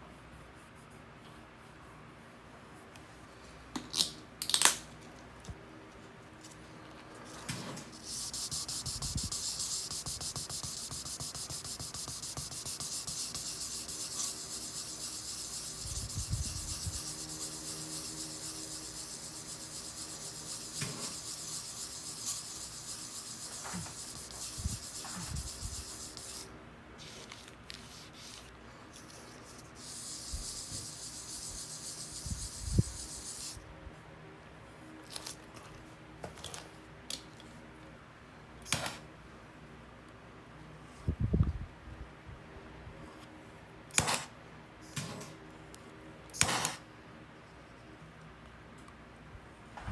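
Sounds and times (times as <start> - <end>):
sandpaper rubbing on wood: 7.9 - 26.5, 29.5 - 33.6.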